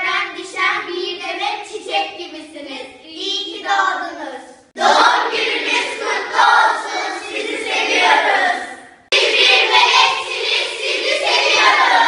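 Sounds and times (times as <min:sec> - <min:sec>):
group of voices singing in chorus: 0:04.8 - 0:12.0.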